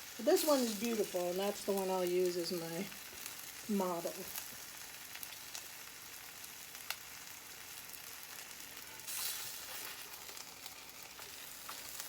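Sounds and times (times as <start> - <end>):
food sizzling in a pan: 0.0 - 12.0.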